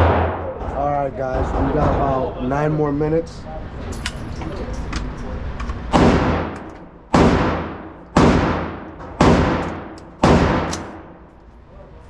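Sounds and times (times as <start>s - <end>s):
gunshots echoing: 0.0s - 1.0s, 5.9s - 11.2s.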